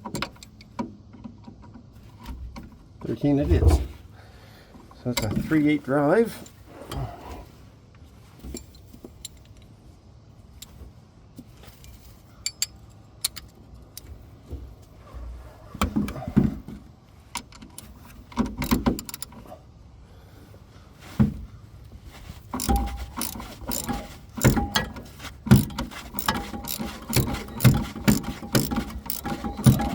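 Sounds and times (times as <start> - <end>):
metal hand tools clinking: 22.6 - 29.9.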